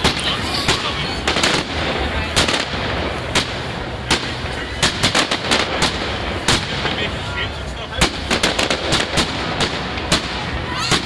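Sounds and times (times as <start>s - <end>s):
fireworks bangs: 0.0s - 11.0s
noisy background: 0.0s - 11.0s.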